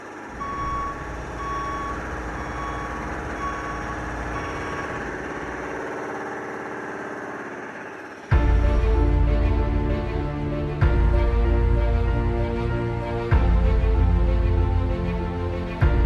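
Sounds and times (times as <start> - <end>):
heavy equipment engine running: 0.0 - 16.0
backup alarm beeping: 0.3 - 5.1.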